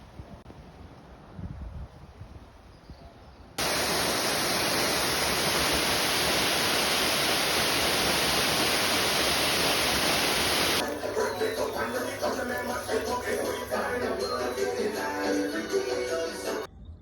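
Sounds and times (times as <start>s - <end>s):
faint outdoor ambience: 0.0s - 17.0s
water rushing: 3.6s - 16.7s.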